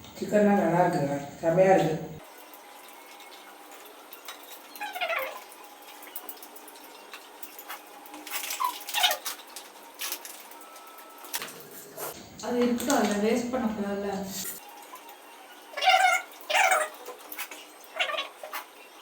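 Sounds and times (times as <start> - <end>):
eating clicks and scrapes: 3.1 - 12.2, 14.4 - 19.0.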